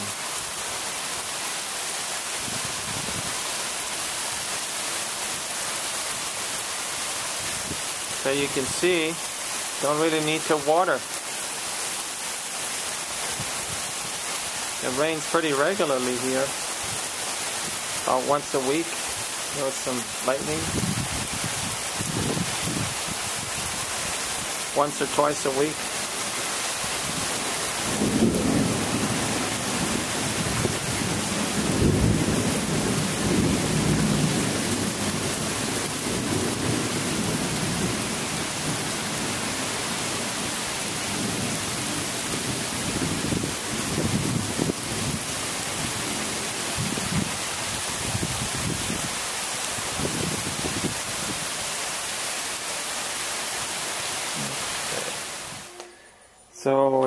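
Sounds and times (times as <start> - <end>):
heavy rain pouring: 0.0 - 56.0
thunder rumbling: 27.0 - 49.1.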